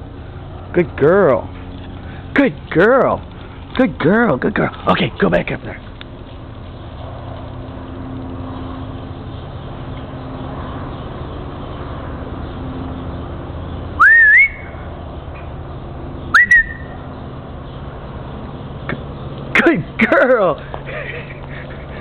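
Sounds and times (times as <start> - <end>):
person whistling rising whistles: 14.0 - 14.7, 16.3 - 16.9.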